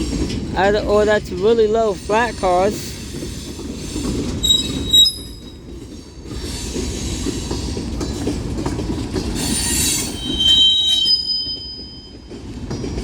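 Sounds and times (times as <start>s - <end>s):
train wheels rumbling on rail: 0.0s - 13.0s
steel wheel squeal: 3.8s - 5.6s, 9.4s - 12.2s.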